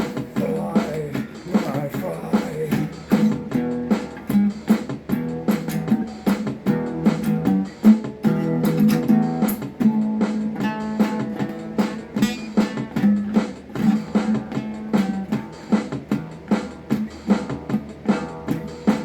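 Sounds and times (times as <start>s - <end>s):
guitar strumming chords: 0.0s - 19.0s.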